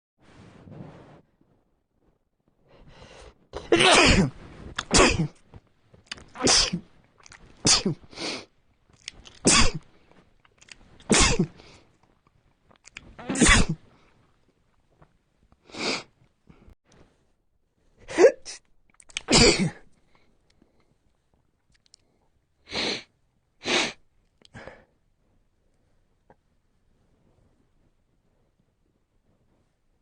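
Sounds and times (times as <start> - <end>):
man sneezing: 3.7 - 5.4, 6.4 - 6.8, 7.6 - 8.1, 13.2 - 13.8, 18.1 - 18.6, 19.3 - 19.8.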